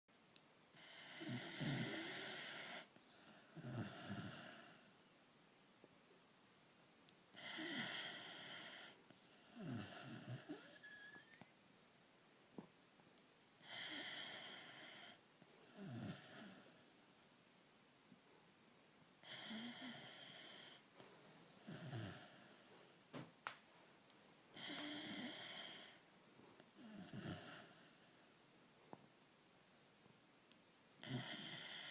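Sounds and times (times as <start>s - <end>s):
dog snoring: 0.7s - 4.9s, 7.3s - 11.4s, 13.6s - 17.3s, 19.2s - 20.8s, 21.5s - 22.7s, 24.5s - 26.0s, 26.7s - 28.3s, 31.0s - 31.9s.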